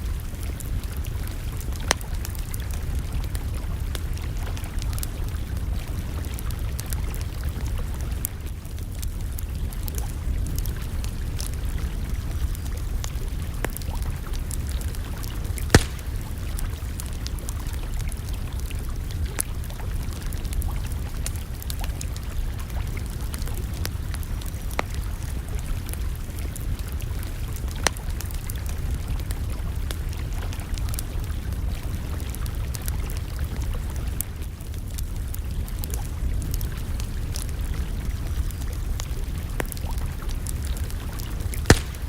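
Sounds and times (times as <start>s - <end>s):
campfire crackling and popping: 0.0s - 42.0s.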